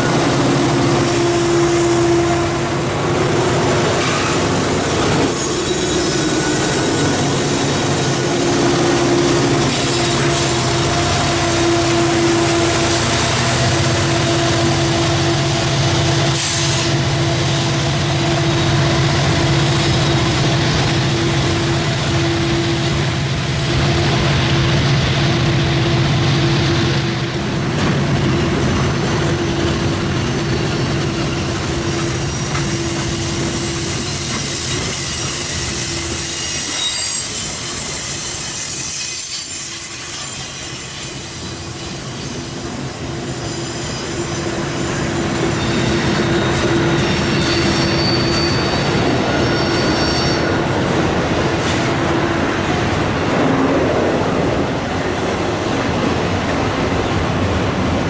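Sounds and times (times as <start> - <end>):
train rumbling on rails: 0.0 - 58.0
wheel squeal: 4.0 - 8.4, 28.7 - 50.8
wheels clickety-clack: 26.7 - 36.8.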